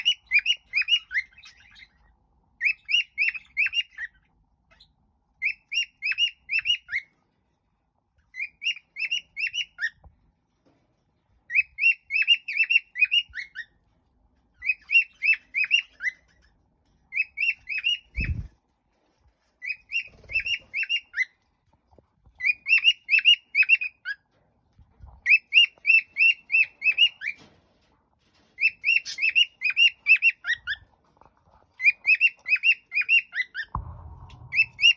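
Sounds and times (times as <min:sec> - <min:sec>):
cockatiel chirping: 0:00.0 - 0:02.0, 0:02.6 - 0:07.1, 0:08.3 - 0:10.0, 0:11.5 - 0:13.8, 0:14.6 - 0:16.5, 0:17.1 - 0:18.5, 0:19.6 - 0:21.4, 0:22.4 - 0:24.2, 0:25.2 - 0:27.5, 0:28.6 - 0:30.9, 0:31.8 - 0:33.8
dull thump: 0:33.8 - 0:34.9.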